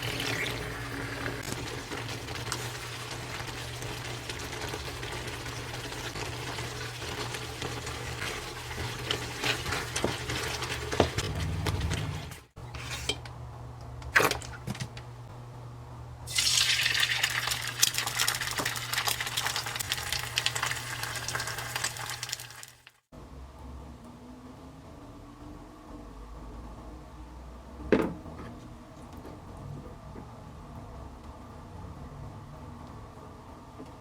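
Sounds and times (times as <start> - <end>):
food sizzling in a pan: 0.0 - 11.2, 16.3 - 23.0
utensil scraping a pan: 6.5 - 13.2.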